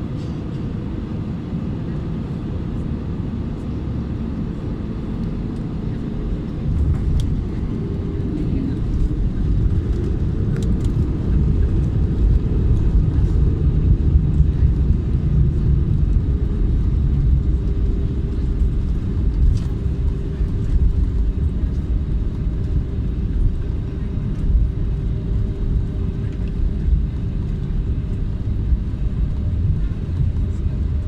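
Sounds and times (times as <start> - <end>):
aircraft cabin low rumble: 0.0 - 31.0.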